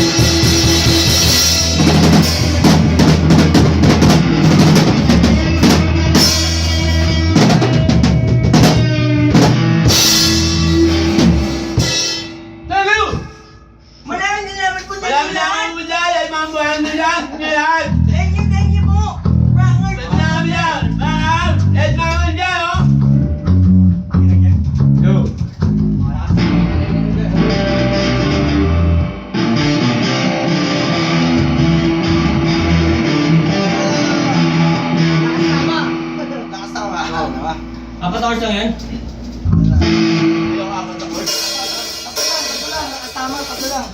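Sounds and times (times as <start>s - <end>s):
bass guitar: 0.0s - 14.0s, 17.8s - 43.9s
live band playing: 0.0s - 14.0s, 22.8s - 43.9s
cymbal crash: 8.6s - 12.6s, 41.0s - 43.9s.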